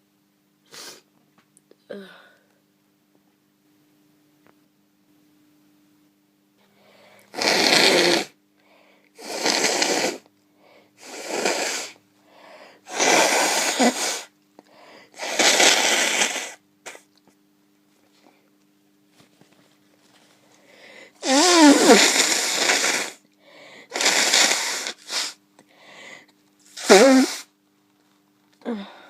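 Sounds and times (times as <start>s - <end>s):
person blowing nose: 0.7s - 1.1s, 7.3s - 8.4s, 9.2s - 10.3s, 11.0s - 12.0s, 12.8s - 14.3s, 15.2s - 17.1s, 21.2s - 23.2s, 23.9s - 25.4s, 26.6s - 27.5s
short breaths: 22.6s - 24.0s, 24.6s - 26.3s.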